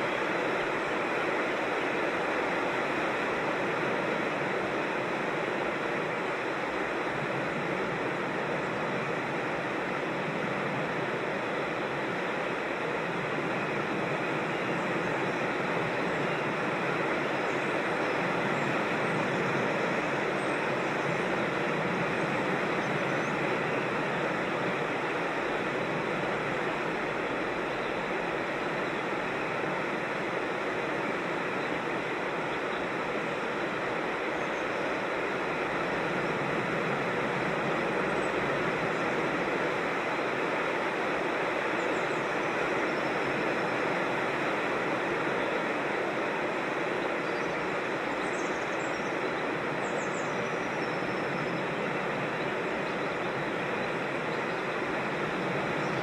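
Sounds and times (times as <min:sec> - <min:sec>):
water rushing in creek: 0:00.0 - 0:56.0.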